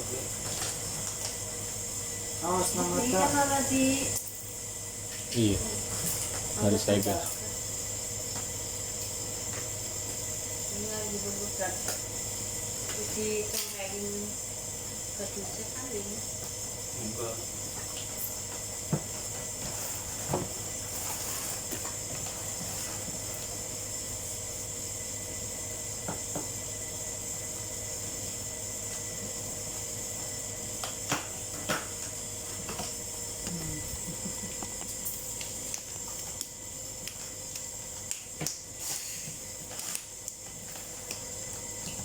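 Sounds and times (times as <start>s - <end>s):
background hiss and hum: 0.0s - 42.0s.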